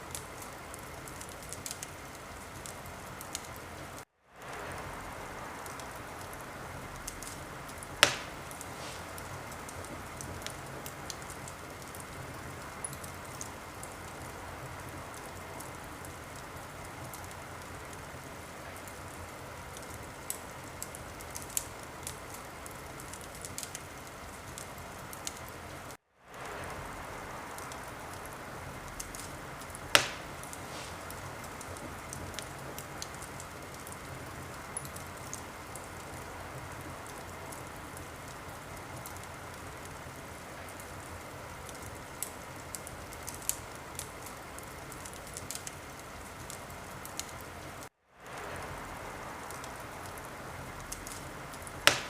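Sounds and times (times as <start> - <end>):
wood fire crackling: 0.0 - 52.0
sharp pops: 8.0 - 9.3, 29.0 - 31.8.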